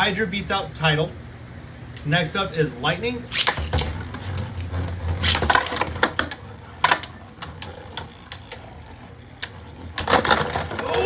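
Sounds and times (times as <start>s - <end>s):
spinning tops humming: 3.2s - 11.0s
spinning tops clacking: 5.2s - 11.0s.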